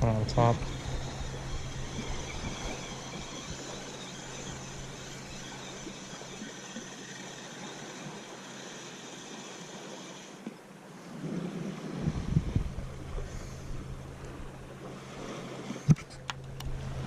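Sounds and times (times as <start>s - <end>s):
low hum: 0.0s - 10.4s, 11.7s - 17.0s
steady wind: 0.0s - 17.0s
water around a boat: 0.0s - 17.0s.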